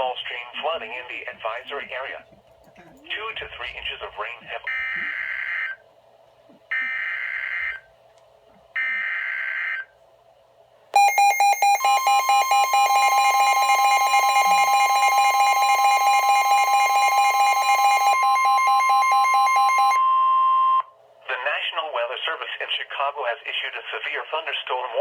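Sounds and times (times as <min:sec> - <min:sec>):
rapid pulsing electronic beep: 0:11.0 - 0:20.0
steady high tone: 0:11.0 - 0:20.9.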